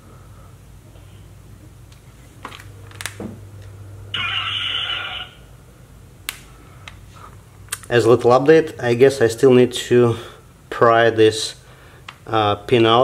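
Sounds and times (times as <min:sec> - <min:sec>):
steady low hum: 0:00.0 - 0:13.0
buzzing tone: 0:04.1 - 0:05.6.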